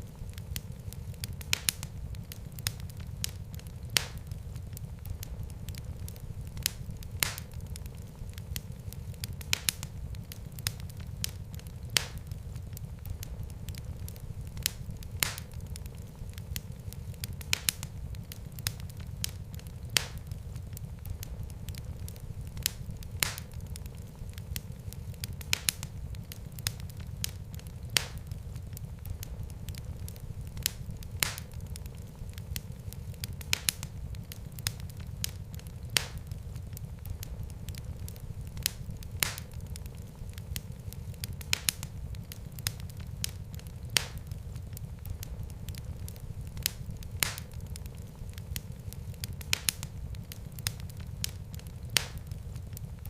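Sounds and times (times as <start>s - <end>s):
fire crackling and popping: 0.0s - 53.0s
low rumble of flames: 0.0s - 53.0s.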